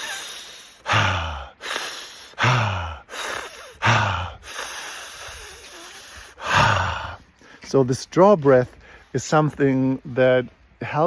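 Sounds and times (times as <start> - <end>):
airy breath through pursed lips: 0.0 - 7.7
man breathing through straw: 0.0 - 7.7, 8.8 - 9.2.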